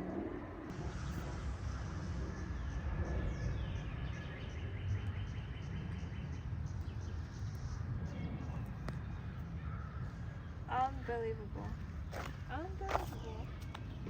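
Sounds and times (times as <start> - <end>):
low rumble: 0.0 - 14.0
cicadas droning: 0.1 - 7.3.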